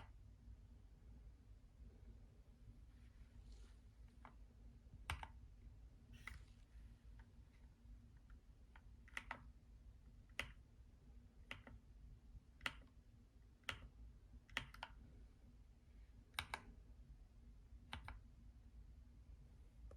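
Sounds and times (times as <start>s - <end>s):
mechanical keyboard keys clicking: 9.1s - 9.5s, 14.5s - 15.0s.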